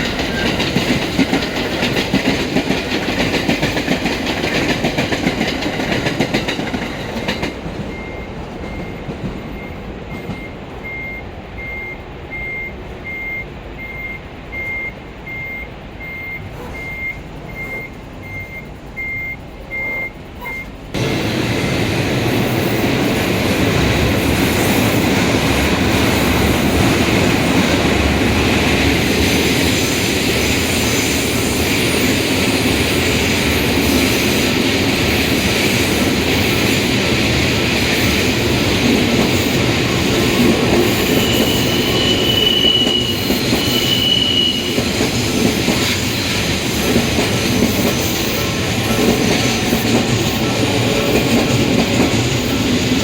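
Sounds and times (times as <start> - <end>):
train wheels rumbling on rails: 0.0 - 53.0
level-crossing alarm beeping: 5.8 - 29.8, 35.4 - 53.0
high wheel squeals: 7.9 - 21.4, 39.4 - 47.0.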